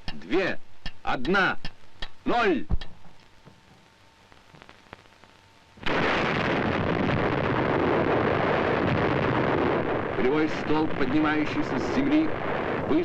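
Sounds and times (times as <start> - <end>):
explosion rumble: 5.8 - 13.0.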